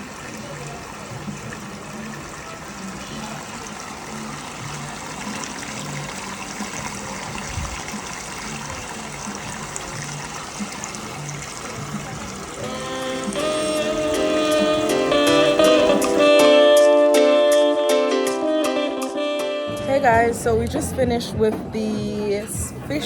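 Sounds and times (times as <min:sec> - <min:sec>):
water trickling in tank: 0:00.0 - 0:16.2.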